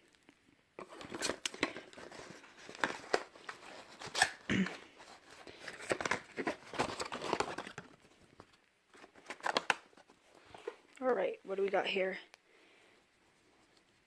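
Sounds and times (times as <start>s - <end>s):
packaging crinkling and rustling: 0.1s - 11.0s.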